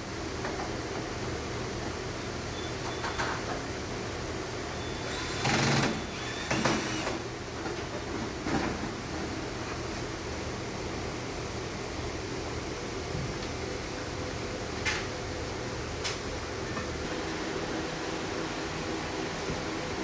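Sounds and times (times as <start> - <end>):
steady low hum: 17.0 - 20.0.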